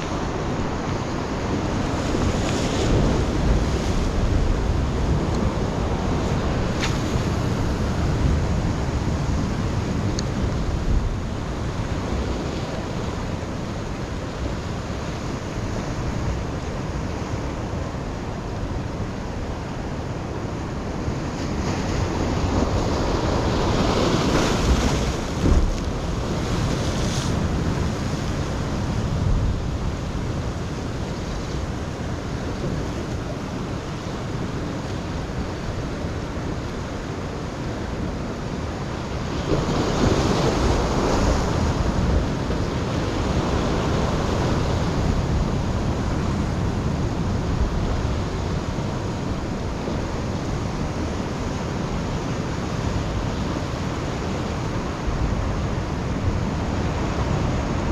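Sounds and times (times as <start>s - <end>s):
wind buffeting microphone: 0.0s - 38.3s
surf washing against rocks: 0.0s - 57.9s.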